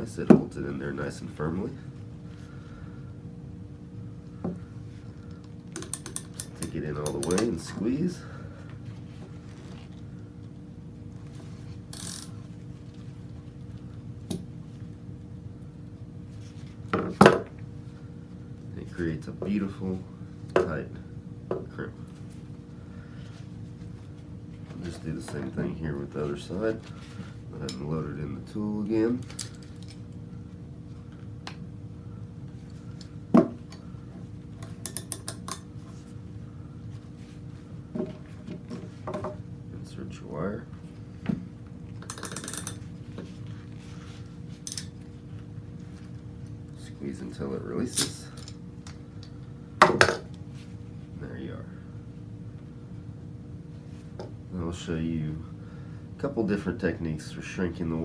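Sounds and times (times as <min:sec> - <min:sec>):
faint steady hum: 0:00.0 - 0:58.0
ratcheting wire crimper clicks: 0:05.7 - 0:07.5, 0:34.8 - 0:35.6, 0:42.0 - 0:42.8.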